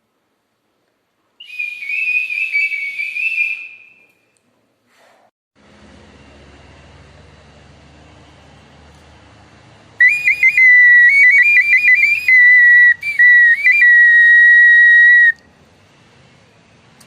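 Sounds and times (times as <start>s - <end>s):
clay whistle warbling: 1.4s - 4.2s, 10.0s - 15.4s.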